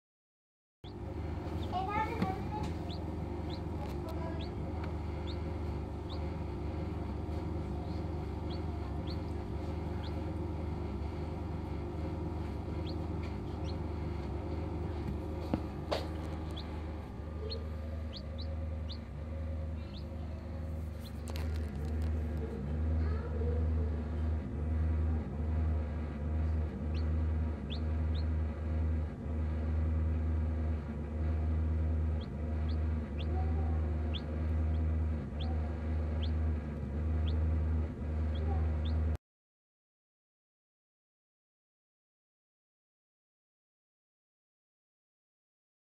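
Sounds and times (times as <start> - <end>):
chicks peeping: 0.8 - 23.0, 25.8 - 39.2
incubator motor hum: 0.8 - 39.2.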